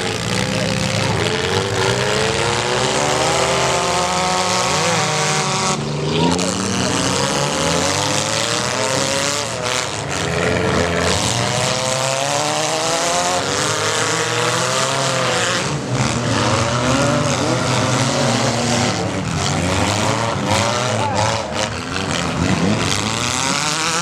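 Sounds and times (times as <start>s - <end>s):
car engines revving: 0.0s - 24.0s.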